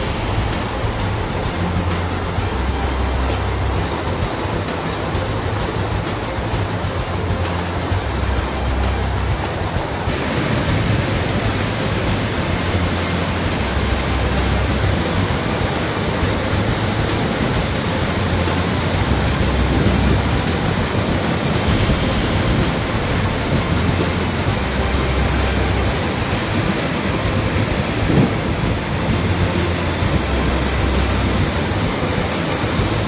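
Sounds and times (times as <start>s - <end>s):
heavy rain pouring: 0.0s - 33.0s.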